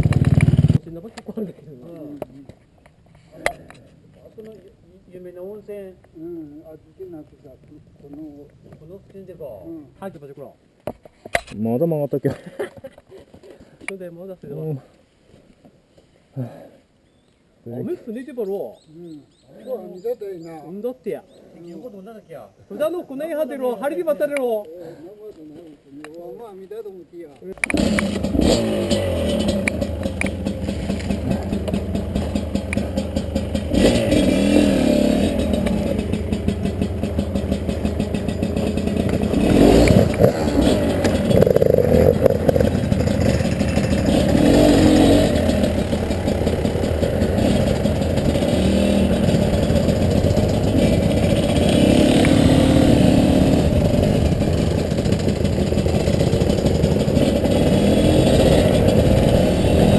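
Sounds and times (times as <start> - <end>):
dirt bike engine revving: 0.0 - 0.8, 27.6 - 59.9.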